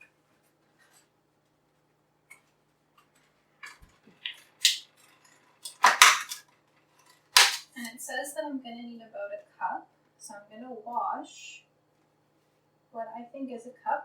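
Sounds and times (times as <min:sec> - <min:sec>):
kitchen items clacking and rustling: 0:03.1 - 0:07.9.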